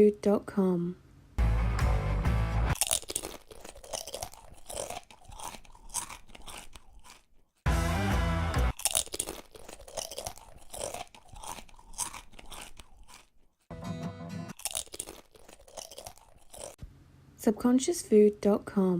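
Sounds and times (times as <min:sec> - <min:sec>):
crunching chips being chewed: 0:02.7 - 0:07.6, 0:08.7 - 0:13.7, 0:14.5 - 0:16.8.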